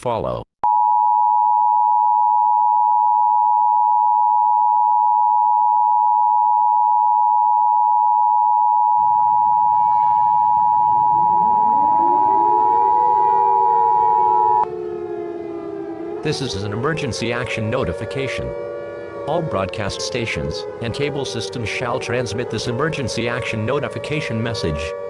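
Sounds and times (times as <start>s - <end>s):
siren winding up to a wail: 1.4s - 25.0s
two-tone alert signal: 9.0s - 14.7s.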